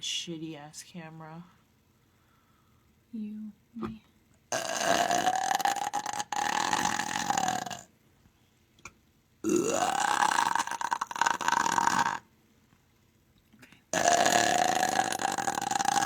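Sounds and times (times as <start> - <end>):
long belches: 4.5 - 7.9, 9.4 - 12.3, 14.0 - 16.0.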